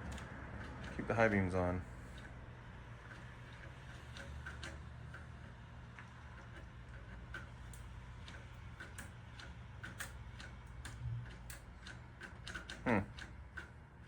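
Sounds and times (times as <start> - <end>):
light ticking clicks: 6.5 - 13.8.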